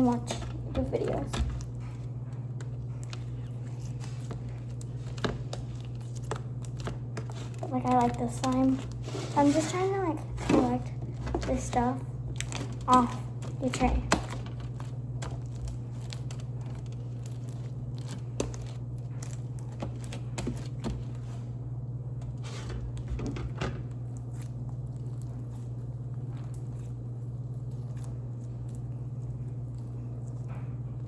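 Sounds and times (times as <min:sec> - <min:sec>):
slime clicking and crackling: 0:00.0 - 0:21.3
steady low hum: 0:00.0 - 0:31.0.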